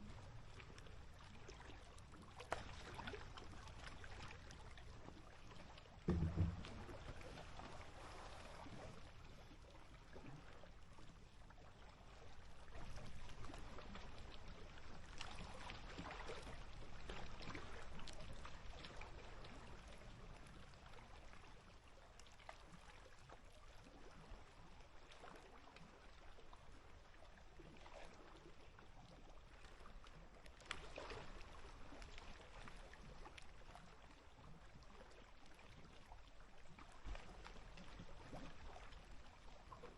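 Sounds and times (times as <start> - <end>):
little splashes: 0.0 - 39.9
small waves lapping: 0.0 - 39.9
low thump: 6.1 - 7.0.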